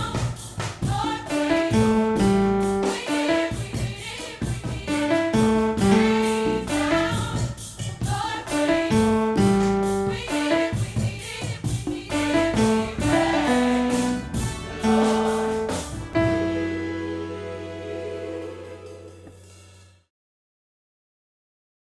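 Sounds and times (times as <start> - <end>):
band with drum beat: 0.0 - 16.9
gospel choir singing: 0.0 - 19.6.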